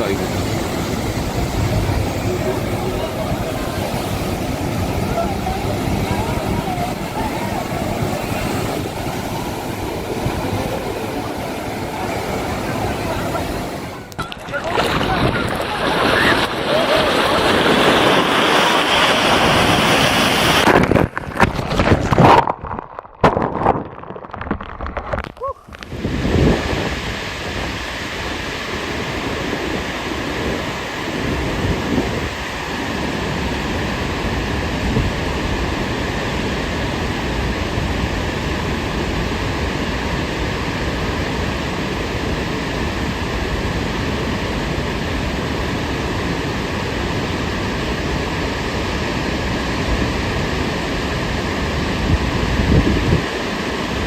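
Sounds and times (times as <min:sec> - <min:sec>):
heavy low rumbles: 0:00.0 - 0:13.9
stormy sea roaring: 0:00.0 - 0:54.0
wind: 0:00.0 - 0:54.0.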